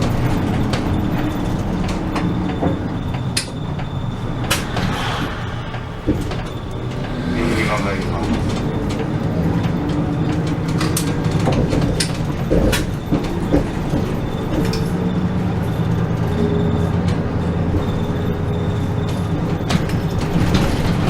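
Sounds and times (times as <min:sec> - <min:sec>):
bus engine droning: 0:00.0 - 0:21.0
bodywork clicks and rattles: 0:08.5 - 0:15.5.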